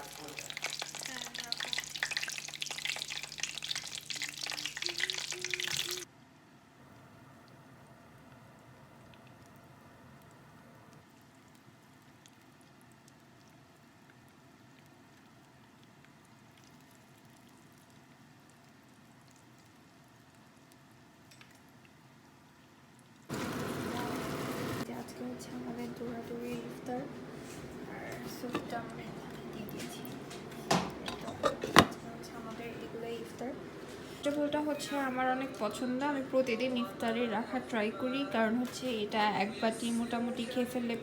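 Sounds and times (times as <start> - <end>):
stirring in a pan: 0.0 - 6.0
food frying in hot oil: 0.0 - 6.1, 11.2 - 27.0
food sizzling on stove: 0.0 - 6.1, 23.3 - 41.0.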